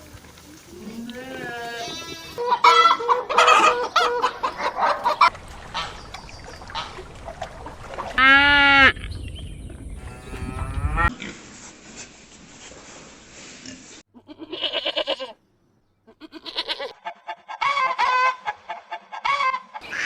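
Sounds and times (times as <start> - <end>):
chickens clucking and calling: 1.8 - 9.1, 16.6 - 20.0.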